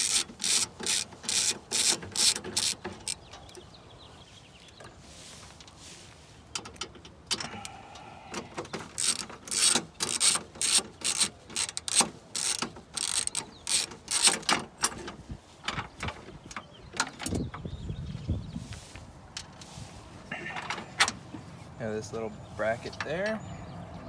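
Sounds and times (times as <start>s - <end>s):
socket ratchet clicking: 0.0s - 3.2s, 8.8s - 14.6s.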